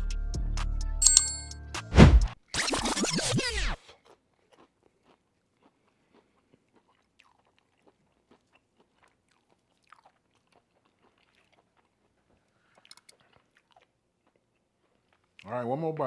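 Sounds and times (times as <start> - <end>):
chewing crispy fried chicken: 4.0 - 15.5.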